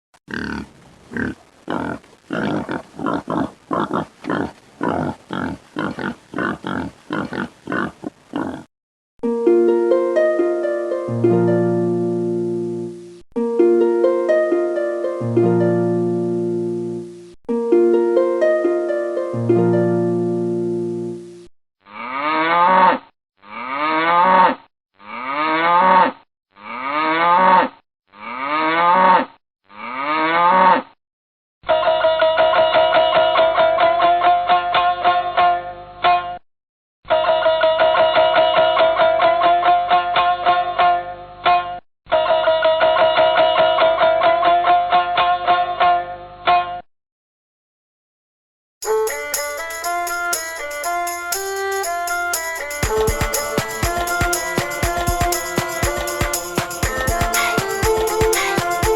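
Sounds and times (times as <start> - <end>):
pig grunting: 0.3 - 8.7
cow mooing: 21.9 - 30.9.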